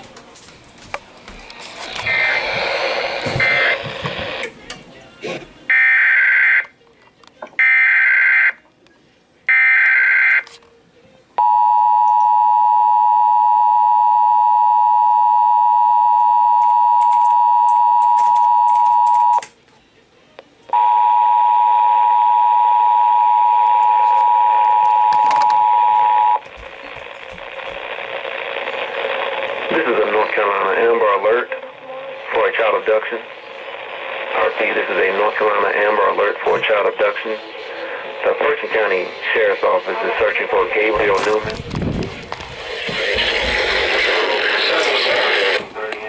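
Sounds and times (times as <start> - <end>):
screeching data bursts: 1.8 - 4.5.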